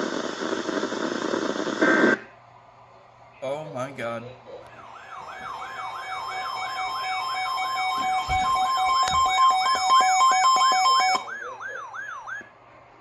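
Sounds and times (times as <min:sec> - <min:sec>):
siren-like alarm sweeping down: 0:04.8 - 0:12.5.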